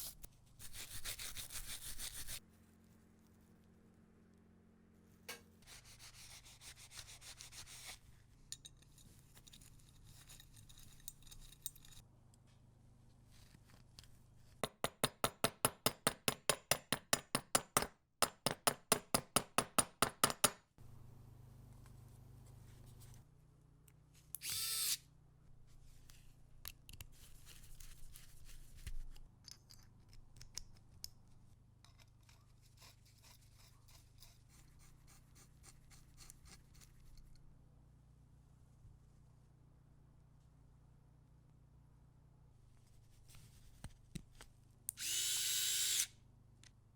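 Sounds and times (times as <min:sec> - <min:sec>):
rubbing and scraping metal parts: 0:07.1 - 0:12.0.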